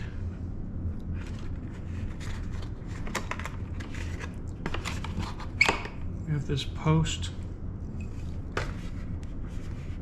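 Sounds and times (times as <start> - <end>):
steady low hum: 0.0 - 10.0
packaging clicks rustles and scrapes: 1.2 - 5.7.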